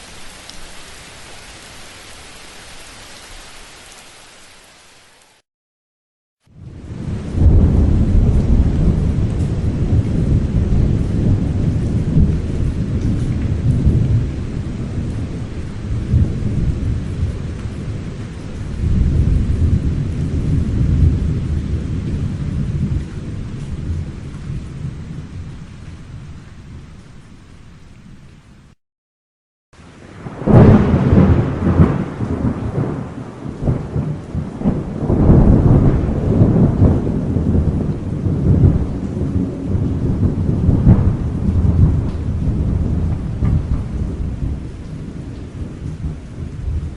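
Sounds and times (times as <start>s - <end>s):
thunder rumbling: 6.6s - 26.9s, 29.9s - 46.9s
thunder crack: 6.7s - 17.4s, 30.2s - 46.9s.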